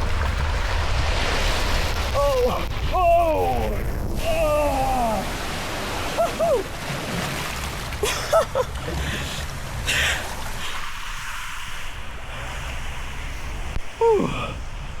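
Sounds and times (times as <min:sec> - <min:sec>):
water rushing and splashing: 0:00.0 - 0:15.0
person exclaiming: 0:02.2 - 0:05.3.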